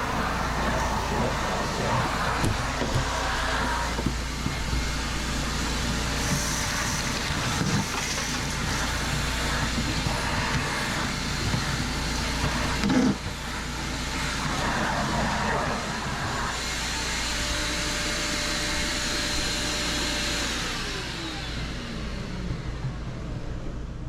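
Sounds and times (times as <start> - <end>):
shop vacuum running: 0.0 - 24.0.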